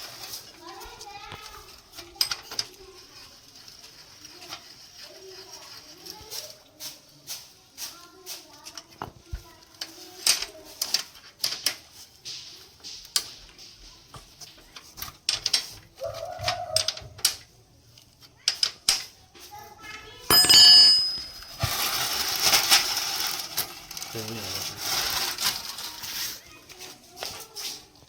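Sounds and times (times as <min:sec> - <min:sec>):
metal part ringing clang: 0:20.3 - 0:21.8
metal tools clicking and knocking: 0:20.3 - 0:22.0.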